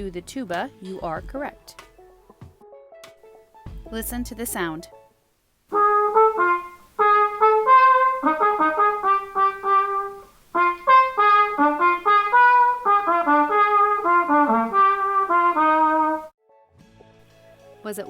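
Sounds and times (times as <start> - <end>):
solo cornet melody: 5.7 - 16.4.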